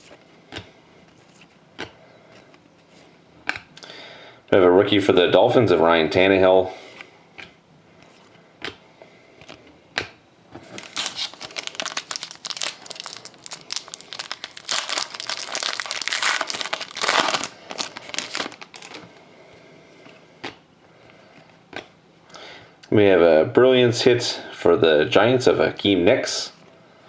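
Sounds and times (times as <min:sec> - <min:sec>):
wrapper tearing and crinkling: 0:10.7 - 0:19.1.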